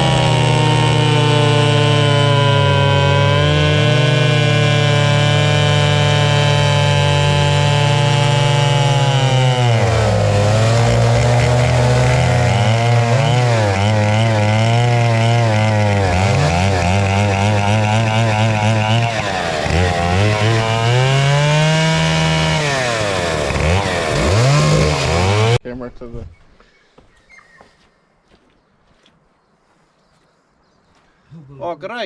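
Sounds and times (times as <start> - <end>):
chainsaw running at high revs: 0.0 - 25.6.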